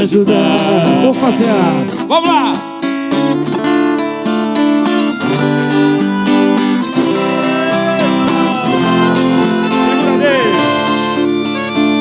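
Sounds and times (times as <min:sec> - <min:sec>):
band playing acoustic guitar music: 0:00.0 - 0:12.0.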